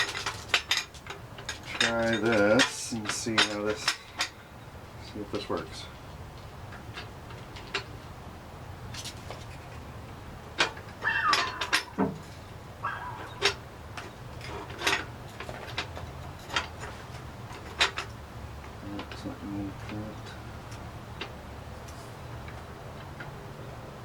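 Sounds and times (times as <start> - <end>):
metal parts clinking: 0.0 - 4.4, 10.6 - 18.2
short falling squeak: 11.0 - 12.0.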